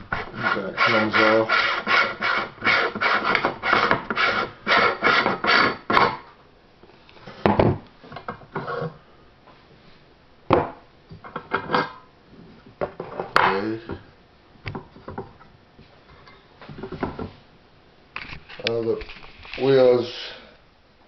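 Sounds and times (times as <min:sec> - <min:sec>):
cast iron parts rasping: 0:00.0 - 0:06.2.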